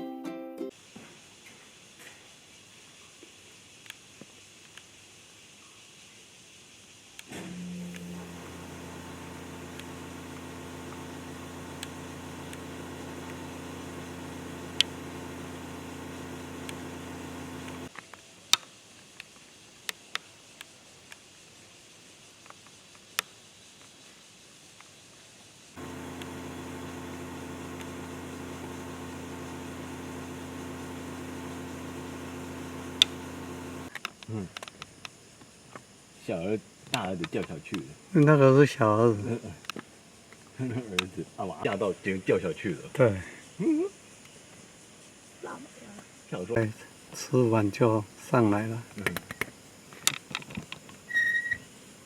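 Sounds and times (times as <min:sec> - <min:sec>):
machine hum: 0:07.4 - 0:17.9, 0:25.8 - 0:33.9.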